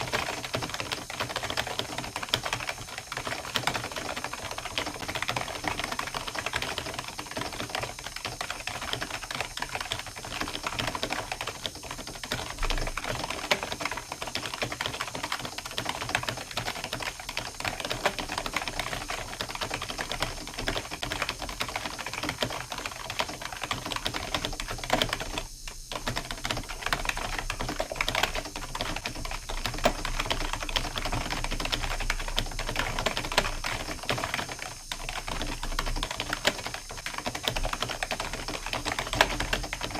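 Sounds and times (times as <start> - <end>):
fast typing on keyboard: 0.0 - 39.9.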